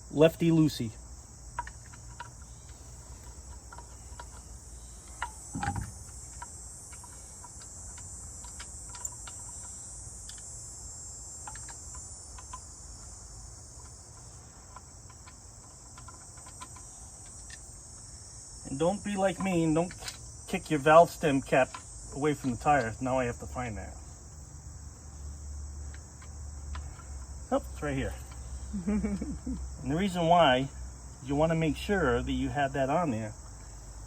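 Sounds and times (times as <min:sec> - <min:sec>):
crickets chirring: 0:00.0 - 0:34.0
dull thump: 0:05.5 - 0:06.1.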